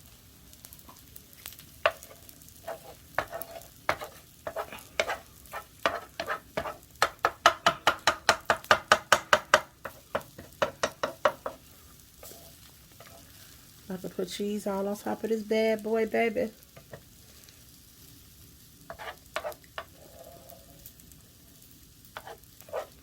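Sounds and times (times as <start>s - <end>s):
utensil scraping a frying pan: 1.8s - 13.6s, 18.9s - 20.9s, 22.2s - 23.0s.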